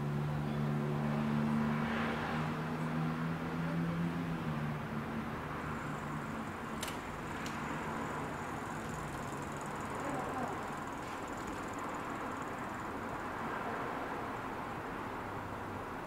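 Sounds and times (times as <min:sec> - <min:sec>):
road traffic noise: 0:00.0 - 0:16.0
vehicle engine hum passing: 0:00.0 - 0:16.0
small sharp clicks: 0:06.7 - 0:07.6.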